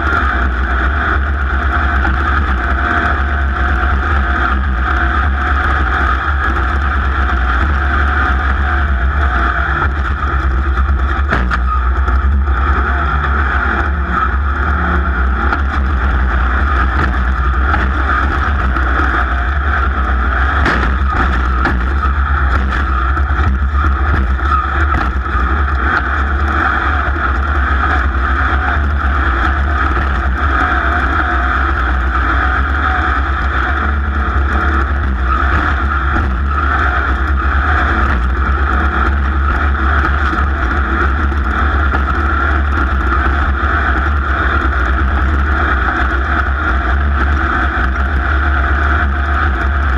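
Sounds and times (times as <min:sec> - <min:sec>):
race vehicle engine: 0:00.0 - 0:49.9
sharp knocks: 0:11.3 - 0:11.7, 0:20.6 - 0:24.3.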